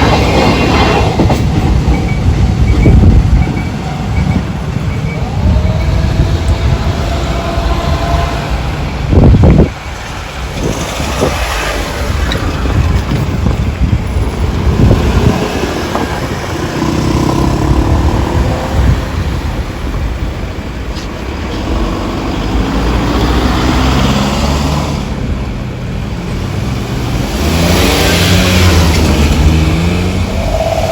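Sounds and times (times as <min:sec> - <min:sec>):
cars driving past: 0:21.5 - 0:30.9.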